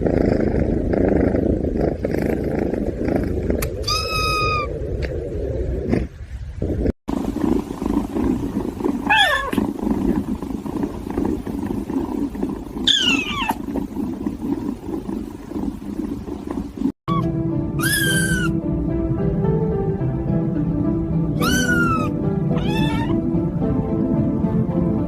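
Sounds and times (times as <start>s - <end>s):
steady low rumble: 0.0s - 25.0s
cat meowing: 17.1s - 18.6s, 21.4s - 23.2s.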